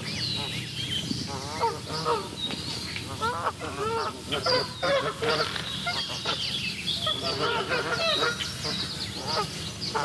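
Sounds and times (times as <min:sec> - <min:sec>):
geese honking: 0:01.3 - 0:10.0.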